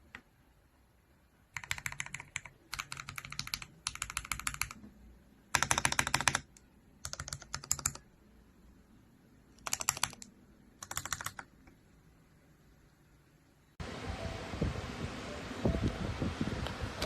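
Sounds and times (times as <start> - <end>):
mechanical keyboard typing: 1.5 - 4.8, 5.5 - 8.1, 9.6 - 11.5.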